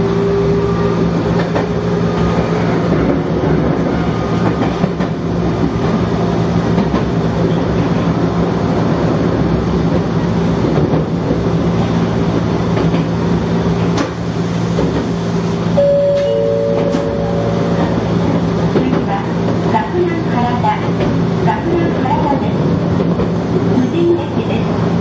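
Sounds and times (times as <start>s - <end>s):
electric train running hum: 0.0s - 25.0s
steady tones: 15.8s - 19.1s.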